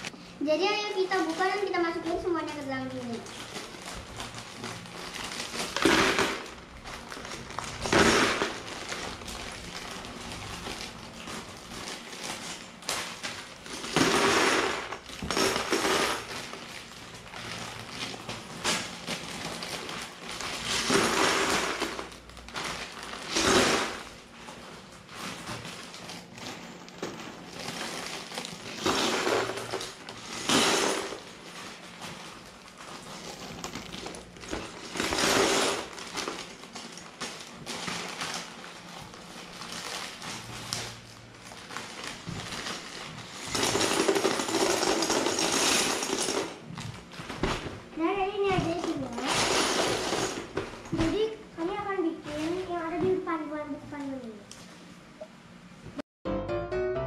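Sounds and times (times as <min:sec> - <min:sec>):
plastic bricks clattering into container: 0:01.3 - 0:24.1, 0:25.2 - 0:40.8, 0:41.6 - 0:46.6, 0:48.9 - 0:50.6.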